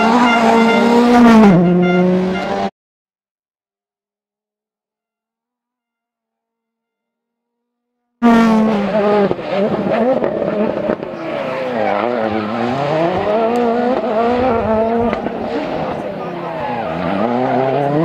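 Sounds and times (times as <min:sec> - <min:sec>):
rally car engine revving: 0:00.0 - 0:02.7, 0:08.2 - 0:18.0.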